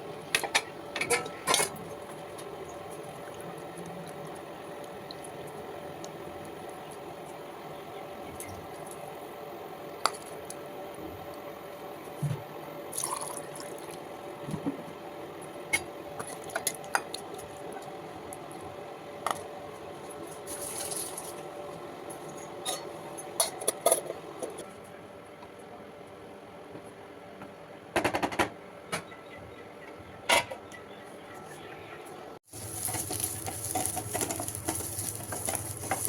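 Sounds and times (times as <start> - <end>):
utensils clinking on pots: 0.3 - 3.4, 22.3 - 24.6, 32.5 - 36.0
food sizzling on stove: 32.4 - 36.0.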